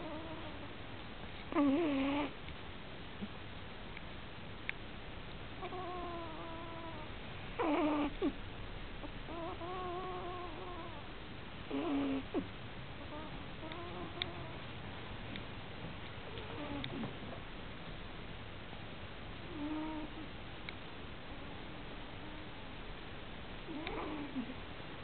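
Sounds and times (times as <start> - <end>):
puppy snorting: 0.0 - 0.7, 1.5 - 2.4, 5.6 - 8.4, 9.0 - 14.6, 16.3 - 17.4, 23.7 - 24.6
puppy snoring: 0.0 - 0.8, 1.4 - 2.4, 5.6 - 8.4, 9.0 - 14.6, 16.3 - 17.4, 19.4 - 20.3, 21.4 - 22.5, 23.7 - 24.6.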